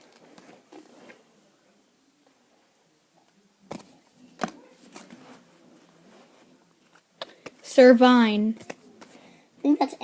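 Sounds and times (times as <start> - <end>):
faint rustling of card pack: 3.7 - 7.6.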